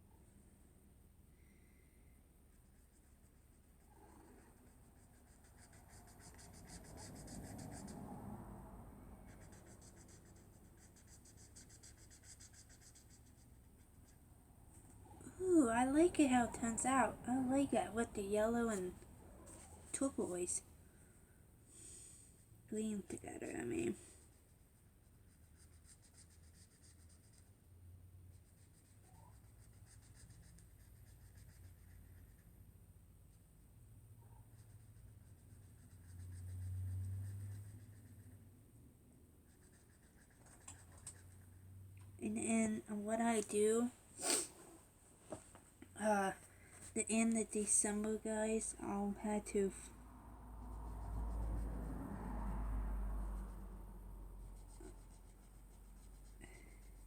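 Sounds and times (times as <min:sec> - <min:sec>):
colouring tool rubbing on paper: 0:02.5 - 0:08.0, 0:09.3 - 0:14.2, 0:25.3 - 0:27.5, 0:28.4 - 0:32.5, 0:34.5 - 0:38.3, 0:44.2 - 0:44.5, 0:54.6 - 0:57.0.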